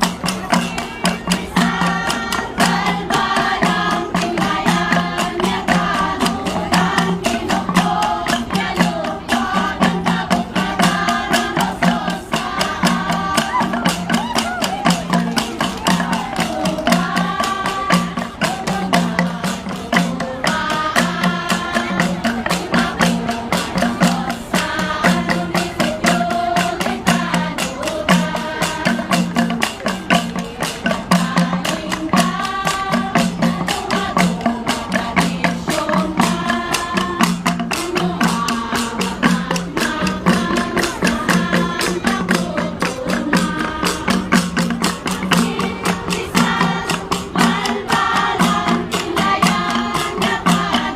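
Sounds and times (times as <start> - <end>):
flat gongs played in fast beat: 0.0 - 50.9.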